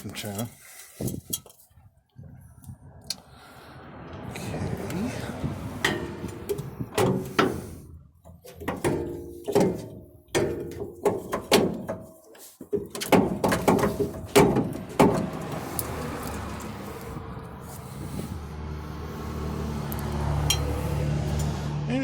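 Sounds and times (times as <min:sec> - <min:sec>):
metal tools clanking: 0:05.8 - 0:15.9, 0:20.0 - 0:21.6.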